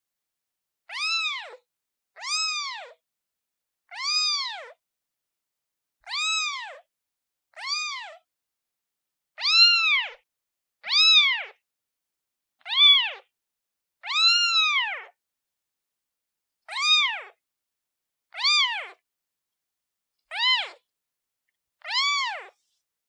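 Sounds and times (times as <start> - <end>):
kitten meowing: 0.9 - 1.6, 2.2 - 3.0, 3.9 - 4.8, 6.0 - 6.9, 7.6 - 8.2, 9.4 - 10.2, 10.8 - 11.6, 12.6 - 13.3, 14.0 - 15.2, 16.7 - 17.4, 18.3 - 19.0, 20.3 - 20.8, 21.8 - 22.6.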